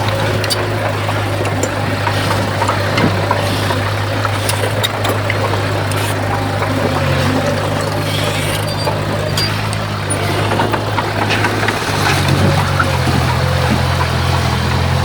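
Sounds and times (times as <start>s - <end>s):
heavy diesel engine running: 0.0s - 15.0s.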